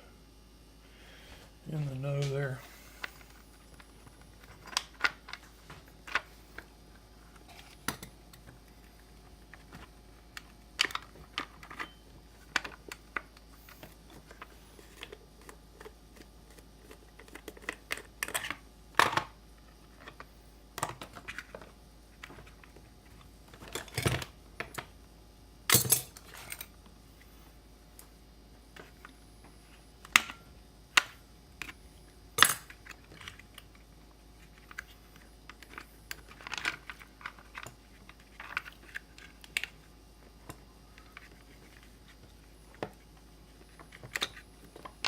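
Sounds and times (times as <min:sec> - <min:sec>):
small parts and tools clattering: 0:25.7 - 0:26.8.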